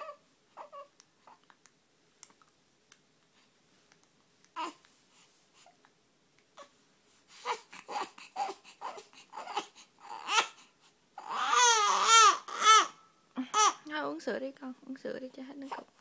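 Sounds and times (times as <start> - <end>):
baby whimpering and wailing: 0.0 - 1.5, 4.6 - 4.8, 7.4 - 13.8.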